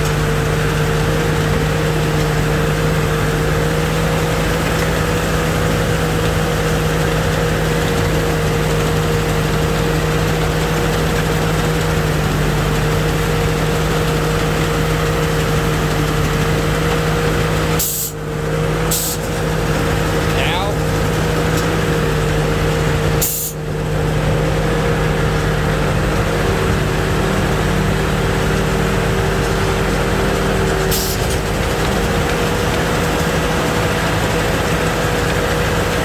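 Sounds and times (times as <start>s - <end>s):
combine harvester engine drone: 0.0s - 36.0s
machinery hum: 17.3s - 36.0s.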